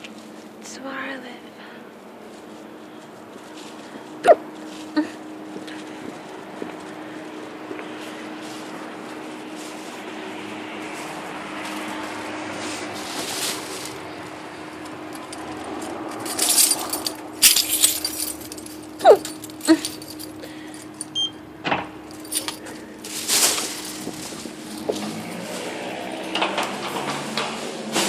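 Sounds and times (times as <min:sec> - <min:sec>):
steady hum: 0:00.0 - 0:28.0
keys jangling: 0:13.8 - 0:21.3, 0:21.9 - 0:27.0.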